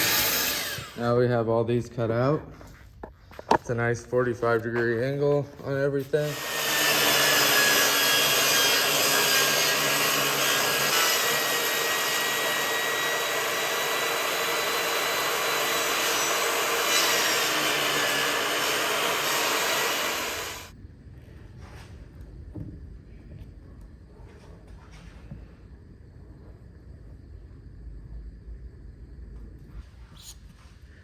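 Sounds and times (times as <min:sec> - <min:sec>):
electric power tool cutting wood: 0:00.0 - 0:01.0, 0:06.2 - 0:20.7.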